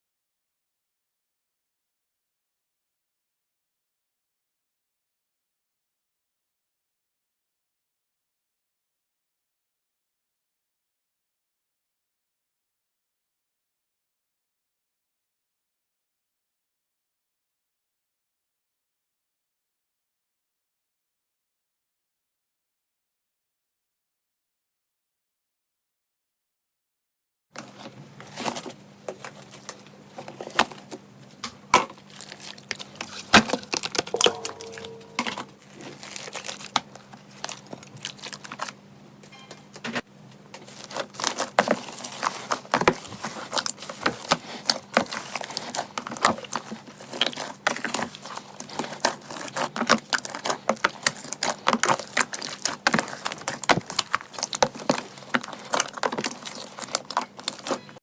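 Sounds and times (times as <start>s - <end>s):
crunchy slime crackling: 35.6s - 38.8s, 40.6s - 58.0s.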